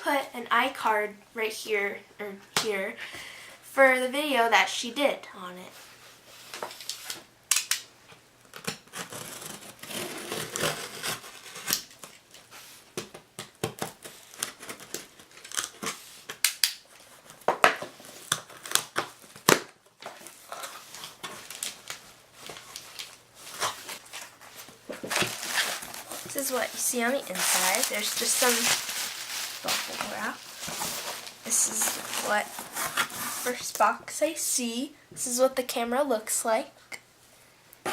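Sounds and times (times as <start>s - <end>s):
tape tearing: 8.5s - 12.2s, 13.7s - 33.7s
rustling packing material: 20.0s - 33.9s.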